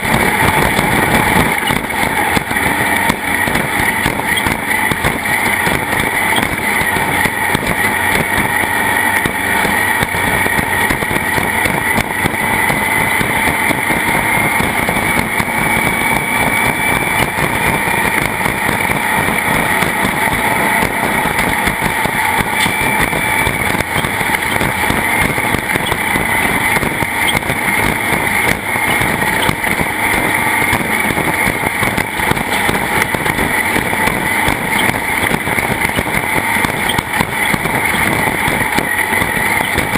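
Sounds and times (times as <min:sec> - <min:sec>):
constant rushing noise: 0:00.0 - 0:39.9
racing engine at high revs: 0:00.0 - 0:39.9.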